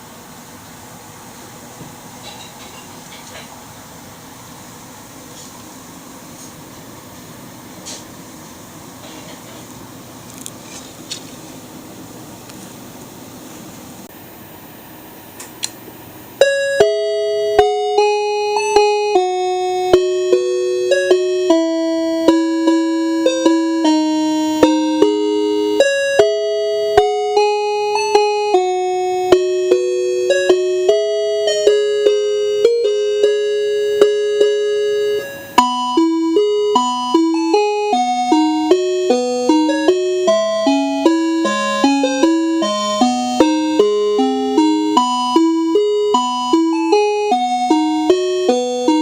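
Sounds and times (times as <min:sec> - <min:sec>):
electronic melody horn tune: 0:16.4 - 0:49.0.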